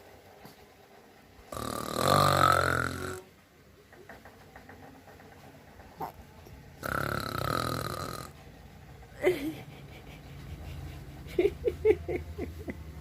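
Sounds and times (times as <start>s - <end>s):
loud rasping snore: 1.5s - 3.3s, 6.8s - 8.4s.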